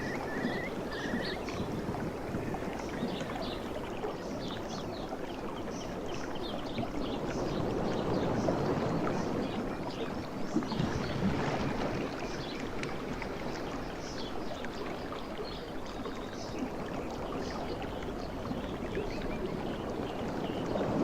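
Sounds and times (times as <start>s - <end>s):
sea waves washing: 0.0s - 3.8s.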